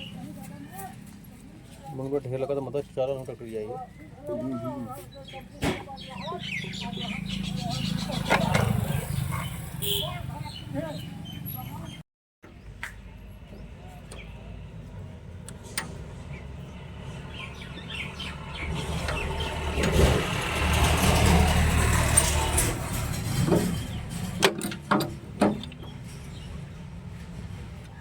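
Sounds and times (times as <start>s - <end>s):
vehicle engine running: 6.0s - 28.0s.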